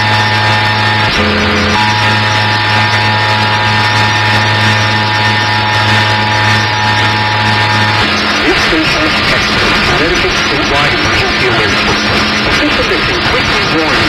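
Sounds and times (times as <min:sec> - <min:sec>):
two-tone alert alarm: 0:00.0 - 0:09.3
low buzz: 0:00.0 - 0:14.0.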